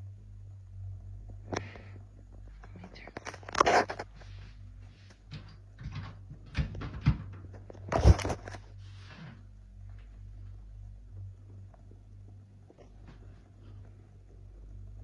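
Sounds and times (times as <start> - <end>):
steady low hum: 0.0 - 15.0
knocks and clunks: 5.3 - 8.6.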